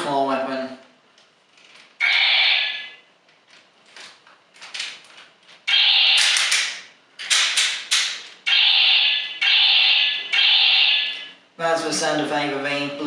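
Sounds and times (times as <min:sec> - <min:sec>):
toy electronic sound effects: 0:02.0 - 0:03.0, 0:05.7 - 0:06.5, 0:08.5 - 0:11.3.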